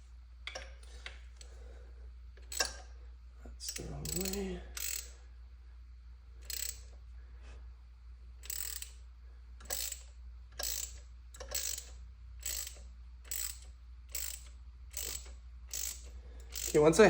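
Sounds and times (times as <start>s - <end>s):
hand ratchet clicking: 2.4s - 2.8s, 3.6s - 5.1s, 6.4s - 6.8s, 8.4s - 9.0s, 9.6s - 17.0s.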